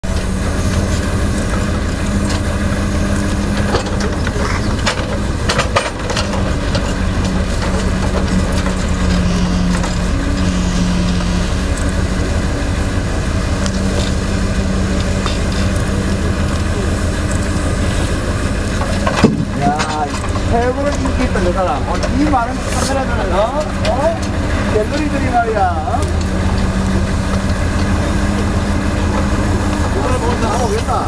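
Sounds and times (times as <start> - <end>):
diesel machinery engine hum: 0.0 - 31.0
sharp knocks: 19.0 - 20.4.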